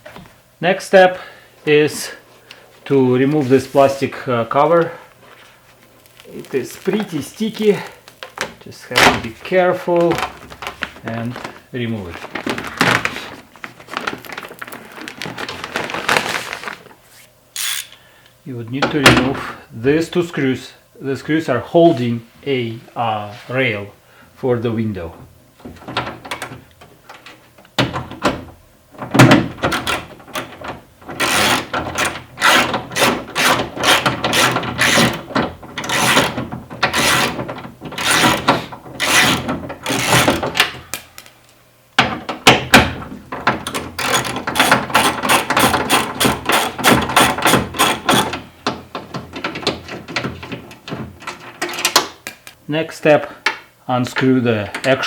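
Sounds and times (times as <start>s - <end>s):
hand ratchet clicking: 17.6s - 18.0s, 31.2s - 37.4s, 38.0s - 40.6s, 43.7s - 48.4s.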